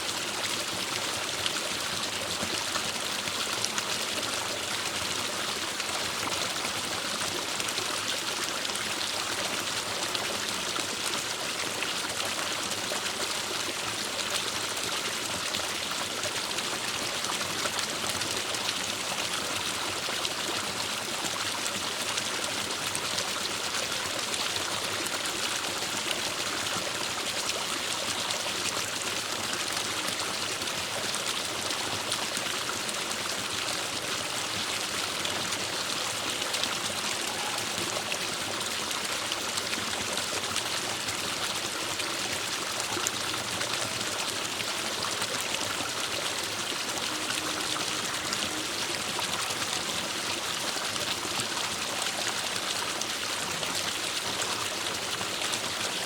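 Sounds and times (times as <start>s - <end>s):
stream flowing over rocks: 0.0s - 56.0s.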